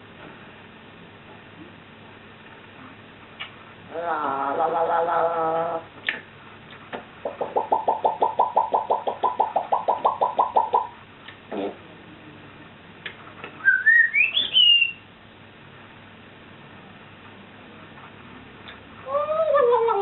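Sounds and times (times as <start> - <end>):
parrot pulsing call: 7.2 - 11.0, 13.7 - 15.0
parrot rising whistle: 13.6 - 15.0.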